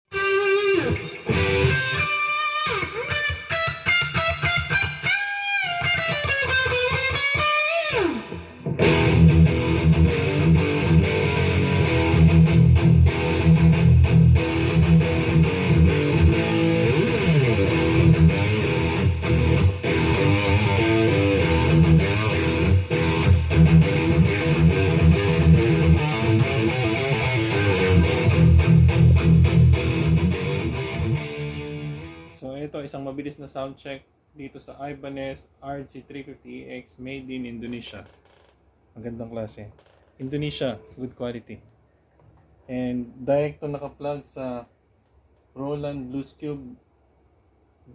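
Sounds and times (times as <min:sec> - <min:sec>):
electric guitar music: 0:00.1 - 0:32.4.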